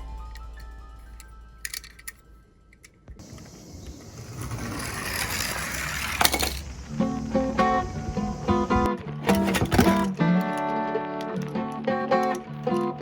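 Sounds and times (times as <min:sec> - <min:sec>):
toy car rattling down slope: 0:03.2 - 0:10.7
plucked guitar music: 0:06.8 - 0:13.0.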